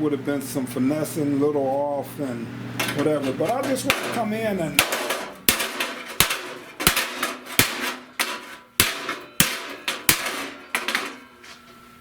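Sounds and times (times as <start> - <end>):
hammer on sheet metal: 2.8 - 11.3.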